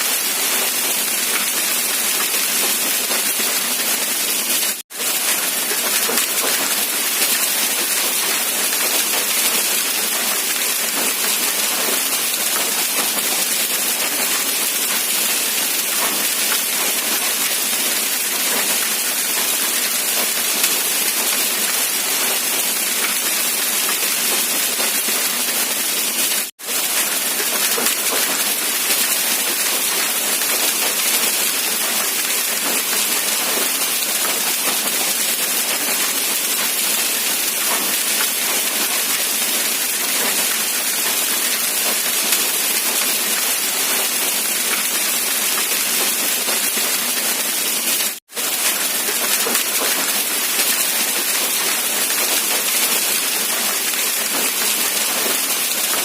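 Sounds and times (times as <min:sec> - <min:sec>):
steady rain hiss: 0:00.0 - 0:56.0.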